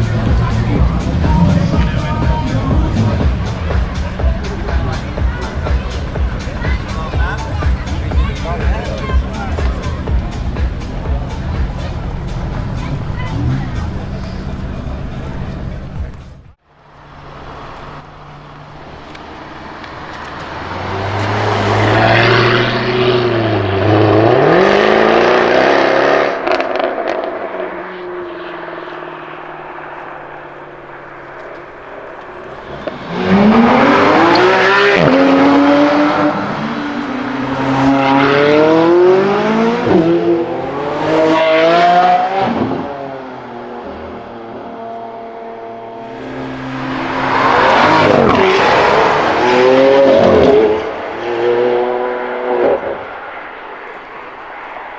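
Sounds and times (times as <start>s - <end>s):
car engine accelerating hard: 0.0s - 54.9s
exhaust crackles: 0.0s - 54.9s.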